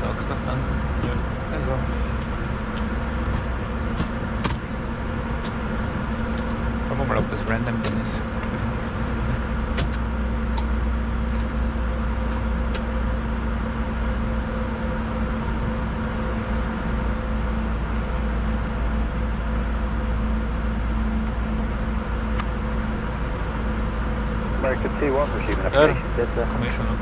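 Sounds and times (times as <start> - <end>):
airflow rush and engine hum: 0.0 - 27.0
steady tones: 21.9 - 27.0.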